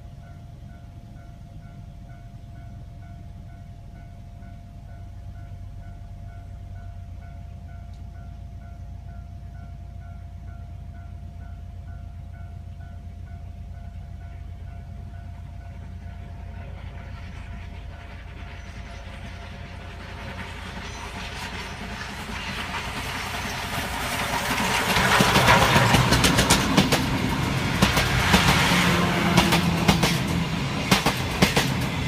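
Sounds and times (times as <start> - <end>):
low steady rumble: 0.0 - 24.8
level crossing warning bell: 0.1 - 17.1.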